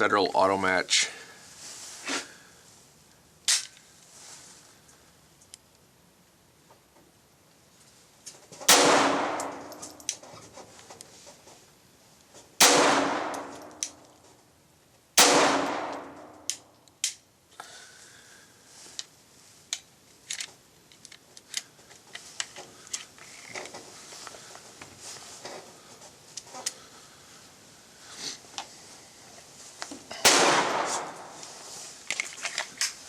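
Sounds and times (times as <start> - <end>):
pistol shots echoing: 8.7 - 10.0, 12.6 - 13.8, 15.2 - 16.5, 30.2 - 31.4.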